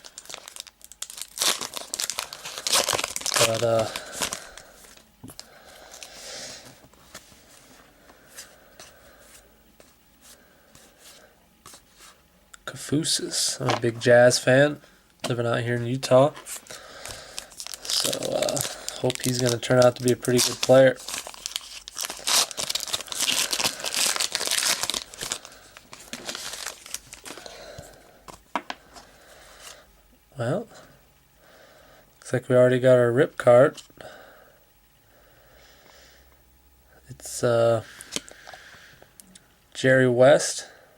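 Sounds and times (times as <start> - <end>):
wrapper being torn and crinkled: 0.0 - 4.7, 16.6 - 27.5
trading cards rustling: 0.0 - 12.2, 15.2 - 29.8.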